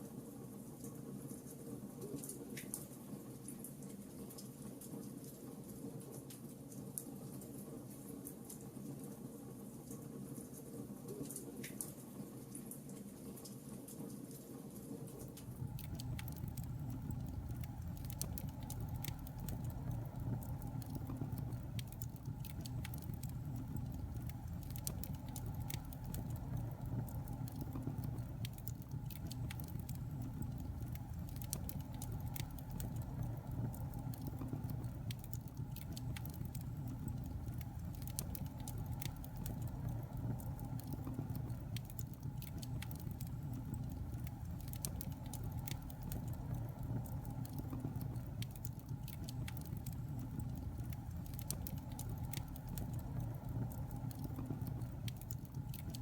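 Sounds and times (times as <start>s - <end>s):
fire crackling and popping: 15.1s - 56.0s
fire burning: 15.2s - 56.0s.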